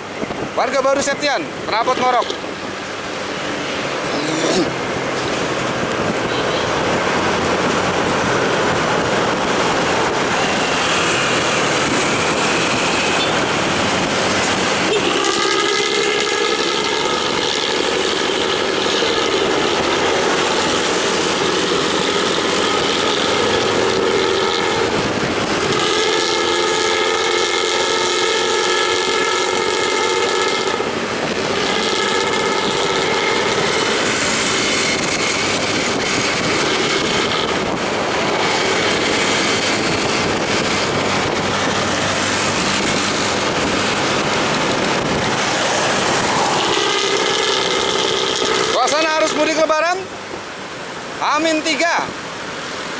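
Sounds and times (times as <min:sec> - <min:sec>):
traffic noise: 0:00.0 - 0:52.9
multi-tone bus air horn: 0:06.2 - 0:06.8, 0:14.8 - 0:20.2, 0:21.6 - 0:34.0, 0:46.5 - 0:48.8.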